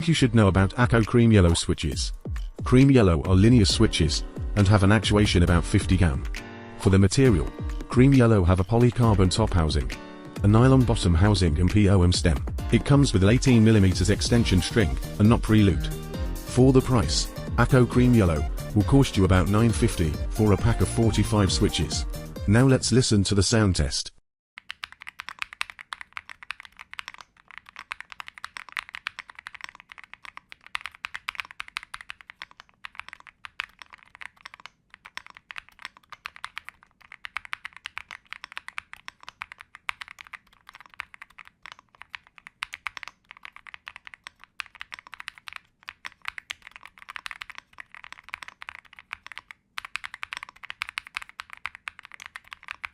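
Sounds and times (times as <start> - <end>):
mechanical keyboard key clacks: 24.6 - 52.9.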